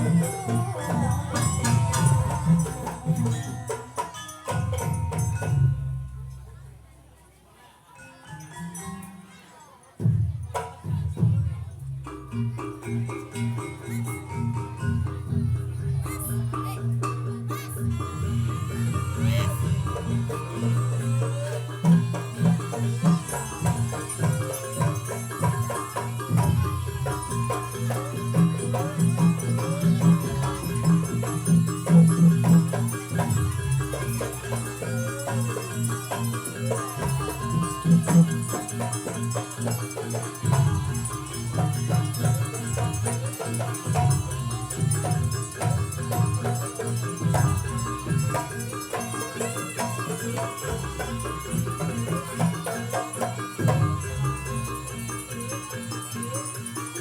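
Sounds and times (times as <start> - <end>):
pitched metal instruments: 0.0 - 7.0, 7.8 - 57.0
drums and percussion ensemble: 0.0 - 57.0.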